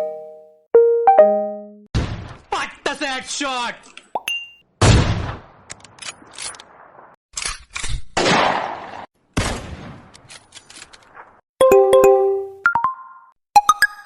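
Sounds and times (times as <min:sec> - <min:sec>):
bright pitched chime: 0:04.2 - 0:04.6.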